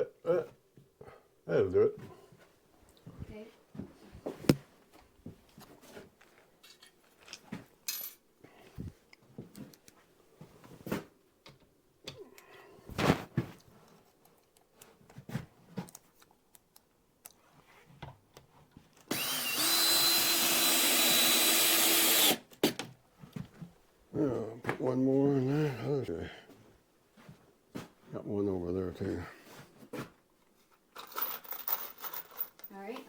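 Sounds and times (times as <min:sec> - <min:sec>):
power drill driving a screw: 0:19.1 - 0:22.4.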